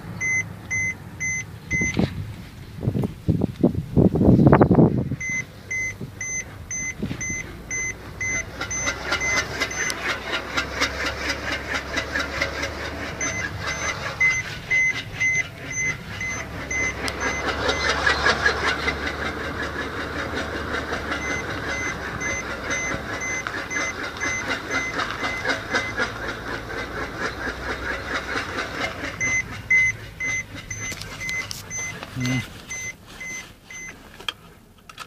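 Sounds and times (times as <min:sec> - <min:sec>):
two-pitch electronic beeping: 0:00.2 - 0:02.0, 0:05.2 - 0:10.0, 0:13.2 - 0:17.9, 0:21.2 - 0:26.0, 0:29.2 - 0:33.9
fast rattling clatter: 0:07.5 - 0:32.2.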